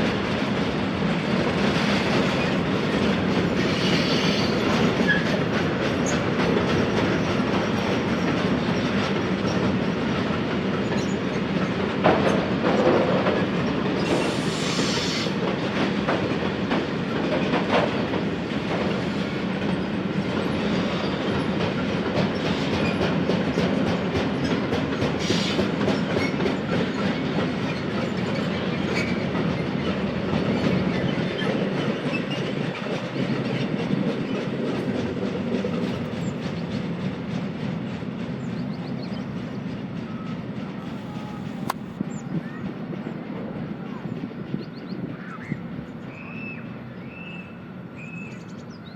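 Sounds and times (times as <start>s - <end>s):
wheels clacking over rail joints: 0.0s - 38.5s
train rumbling: 0.0s - 48.9s.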